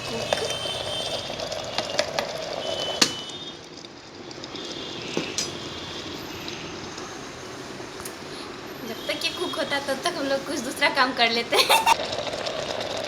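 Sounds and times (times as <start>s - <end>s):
low bubbling hiss: 11.9s - 13.0s.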